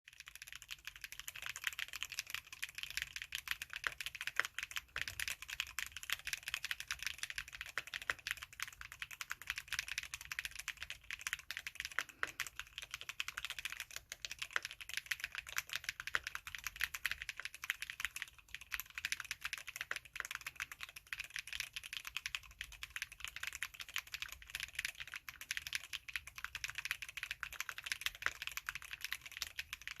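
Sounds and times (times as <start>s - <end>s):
mechanical keyboard typing: 0.1s - 30.0s.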